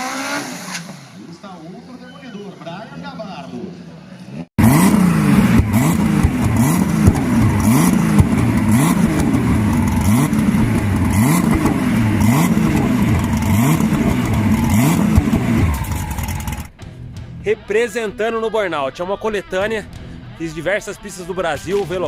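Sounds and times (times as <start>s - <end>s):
car engine revving: 0.0s - 1.3s, 4.6s - 16.8s.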